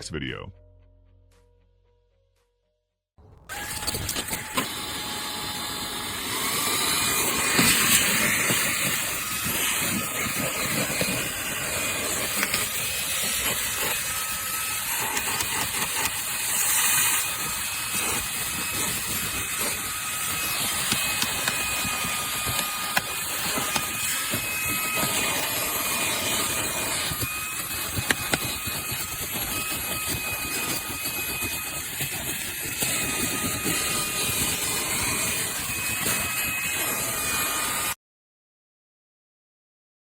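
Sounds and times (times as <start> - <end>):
steady hissing rush: 6.5 - 27.0.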